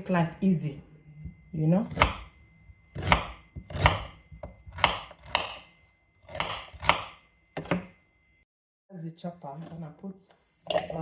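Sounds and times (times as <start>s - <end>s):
knife chopping ginger: 1.3s - 8.0s.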